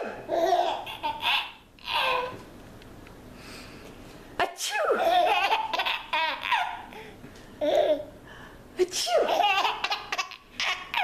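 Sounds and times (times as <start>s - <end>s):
child laughing: 0.3s - 2.4s, 4.9s - 6.9s, 9.2s - 11.0s
person sneezing: 8.8s - 9.3s.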